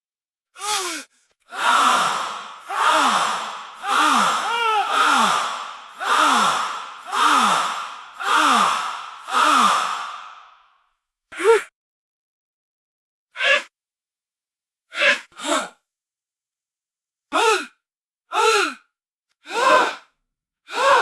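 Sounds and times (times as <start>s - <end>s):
crowd gasping: 1.5s - 10.6s, 20.7s - 21.0s.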